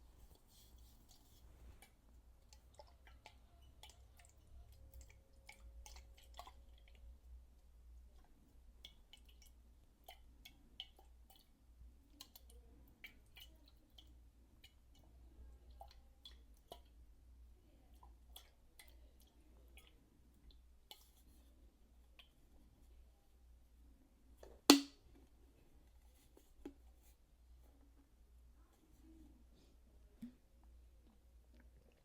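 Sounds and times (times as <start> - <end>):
small water clicks and drips: 0.2 - 23.0, 30.2 - 32.0.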